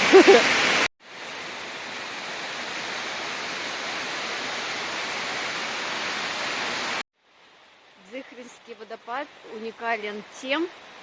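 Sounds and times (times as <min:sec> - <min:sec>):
waterfall rushing: 0:00.0 - 0:07.0.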